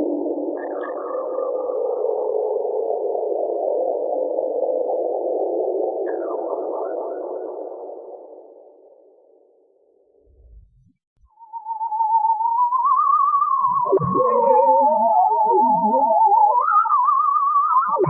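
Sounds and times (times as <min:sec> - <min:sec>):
warbling electronic hum: 0:10.3 - 0:11.0.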